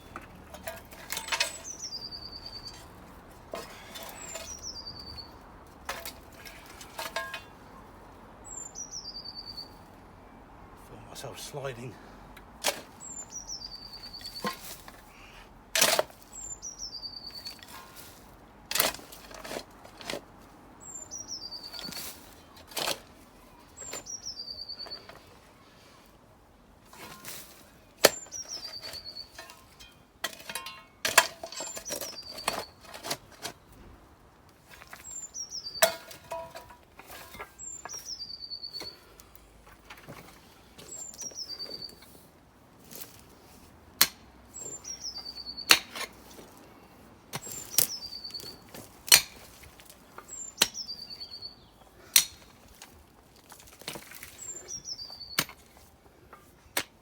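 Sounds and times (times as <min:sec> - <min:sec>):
shovel scraping: 0:00.5 - 0:07.6, 0:12.6 - 0:13.2, 0:13.9 - 0:15.1, 0:15.8 - 0:16.6, 0:17.3 - 0:20.3, 0:21.6 - 0:24.1, 0:26.9 - 0:33.8, 0:34.6 - 0:51.4, 0:52.0 - 0:57.0
small bird singing: 0:01.2 - 0:02.9, 0:03.8 - 0:05.4, 0:08.4 - 0:09.8, 0:13.0 - 0:14.6, 0:16.2 - 0:17.8, 0:20.8 - 0:22.6, 0:23.4 - 0:25.3, 0:28.2 - 0:29.5, 0:31.5 - 0:33.0, 0:34.9 - 0:36.6, 0:37.2 - 0:39.1, 0:40.8 - 0:42.2, 0:44.5 - 0:46.0, 0:47.4 - 0:48.7, 0:50.0 - 0:52.5, 0:54.2 - 0:55.6
shovel blade striking soil: 0:12.6 - 0:13.0, 0:14.2 - 0:15.0, 0:15.8 - 0:16.5, 0:17.4 - 0:20.2, 0:26.9 - 0:33.6, 0:35.7 - 0:38.1, 0:44.0 - 0:46.6, 0:47.3 - 0:51.4, 0:52.1 - 0:53.0, 0:55.4 - 0:55.9.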